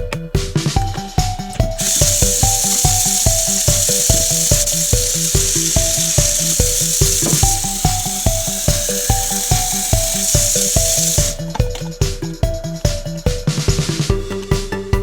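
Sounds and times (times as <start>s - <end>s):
background music with beat: 0.0s - 15.0s
espresso machine steam hissing: 1.8s - 11.4s.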